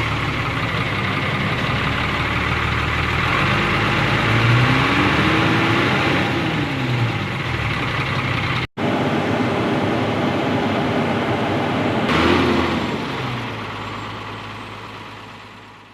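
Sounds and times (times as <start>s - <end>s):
diesel truck engine idling: 0.0s - 4.7s, 6.2s - 15.9s.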